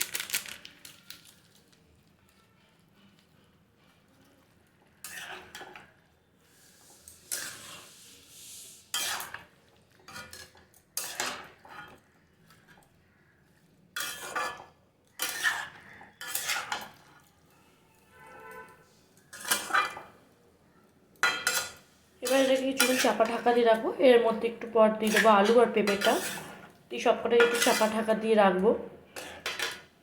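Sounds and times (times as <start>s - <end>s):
spatula scraping a cooking pan: 4.9s - 12.7s, 14.0s - 17.3s, 19.0s - 20.2s, 21.2s - 24.3s, 24.9s - 28.2s, 29.1s - 29.9s.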